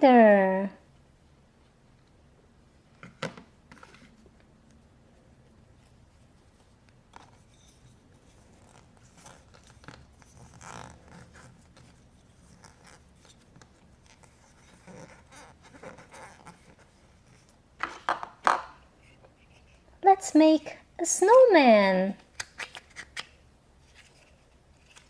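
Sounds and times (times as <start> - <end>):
hands handling play dough toys: 5.7 - 19.9.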